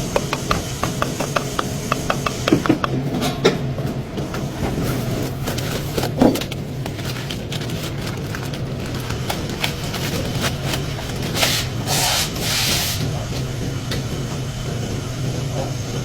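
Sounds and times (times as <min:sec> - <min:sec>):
car engine humming: 0:00.0 - 0:03.2
metal clicks and knocks: 0:00.0 - 0:03.4.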